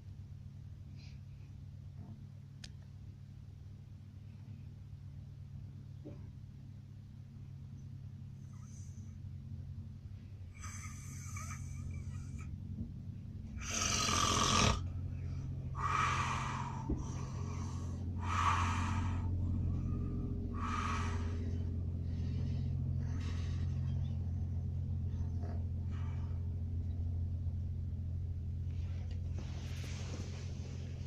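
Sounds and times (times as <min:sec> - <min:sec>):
low hum of moving train: 0:00.0 - 0:31.0
man snoring heavily: 0:13.6 - 0:14.9, 0:15.8 - 0:19.3, 0:20.5 - 0:21.6.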